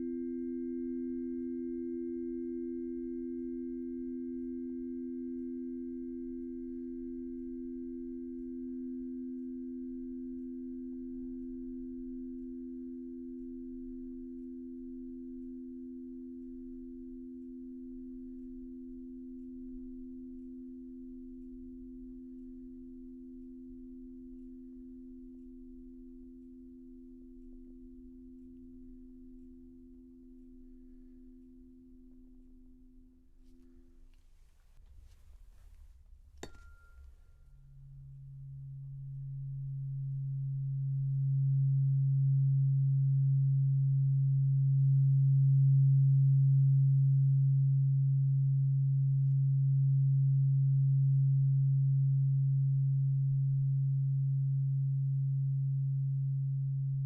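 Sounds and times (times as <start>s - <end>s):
tuning forks ringing: 36.4s - 37.5s.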